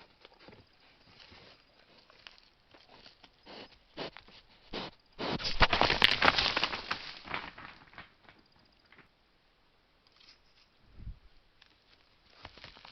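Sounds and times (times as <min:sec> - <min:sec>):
dry vegetation crackling and rustling: 0:05.4 - 0:09.1, 0:11.5 - 0:12.9.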